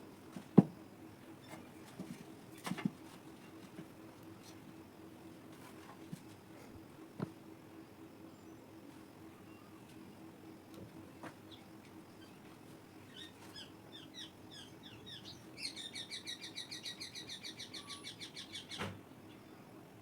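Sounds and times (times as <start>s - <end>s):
faint steady hum: 0.0s - 20.0s
bird chirps and trill: 13.1s - 18.8s.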